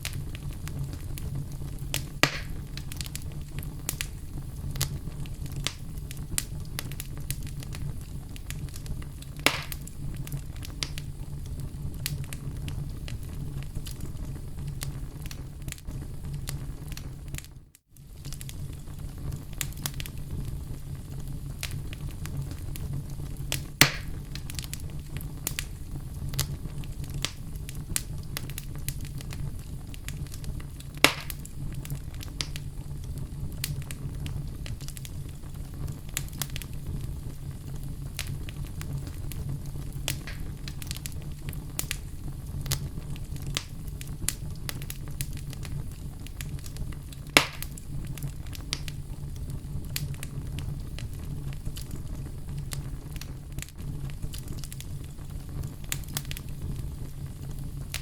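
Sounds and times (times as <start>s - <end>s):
fire crackling: 0.0s - 58.0s
fire flames rumbling: 0.0s - 58.0s
sharp wood pops: 2.2s - 2.6s, 9.5s - 9.8s, 23.8s - 24.2s, 31.0s - 31.4s, 40.1s - 40.4s, 47.4s - 47.7s.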